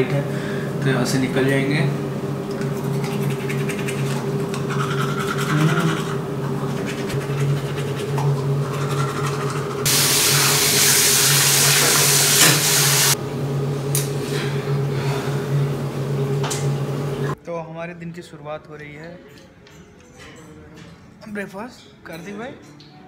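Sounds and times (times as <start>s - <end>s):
steady hum: 0.0s - 17.4s
teeth brushing with toothbrush: 2.5s - 9.9s
tap running into sink: 9.9s - 13.1s.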